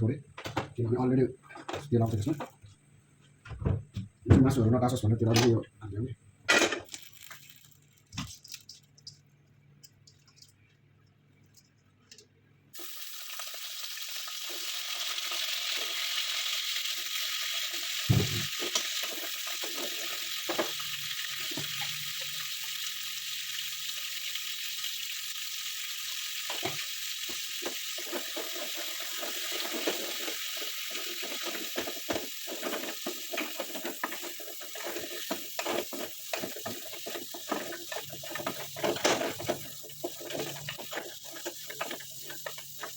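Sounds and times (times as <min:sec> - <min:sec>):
meat sizzling in hot oil: 0:12.8 - 0:42.9
stirring clicks and knocks: 0:26.5 - 0:42.9.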